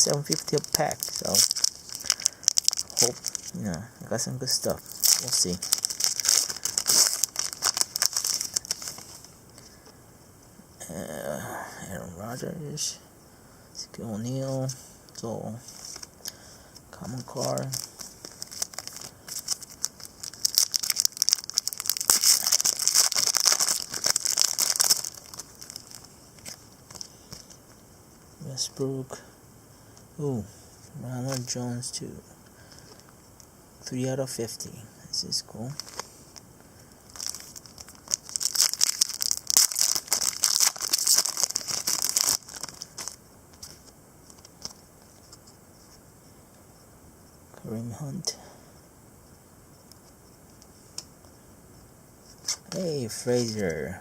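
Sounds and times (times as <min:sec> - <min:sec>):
cards being handled: 0:00.0 - 0:03.8, 0:04.4 - 0:09.7, 0:15.6 - 0:27.8, 0:37.1 - 0:46.0, 0:52.3 - 0:53.9
wrapper crinkling and rustling: 0:00.0 - 0:09.7, 0:15.6 - 0:27.8, 0:35.6 - 0:46.0, 0:52.3 - 0:53.9.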